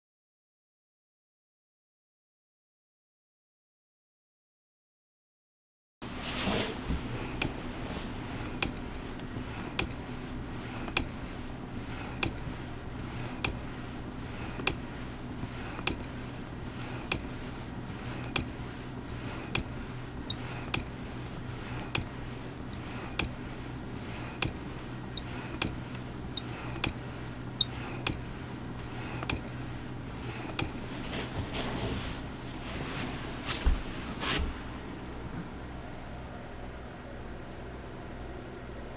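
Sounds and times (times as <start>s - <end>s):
exercise machine squeaking: 8.1s - 13.7s, 17.0s - 18.5s, 19.1s - 19.7s, 20.3s - 22.1s, 22.7s - 23.4s, 24.0s - 25.8s, 26.4s - 27.0s, 27.6s - 28.2s, 28.8s - 30.8s.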